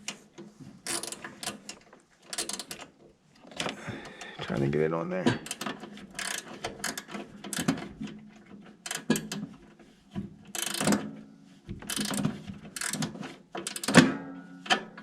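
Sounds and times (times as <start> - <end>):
ratcheting driver clicks: 0.9 - 2.9, 5.4 - 7.8, 8.8 - 9.4, 10.5 - 11.0, 12.8 - 14.0.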